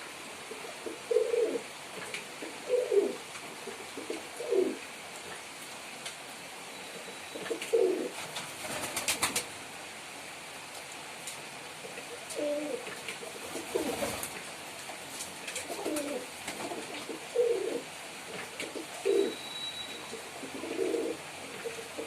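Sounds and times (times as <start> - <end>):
pigeon cooing: 0.4 - 4.8, 7.2 - 8.2, 11.8 - 14.3, 15.5 - 22.0.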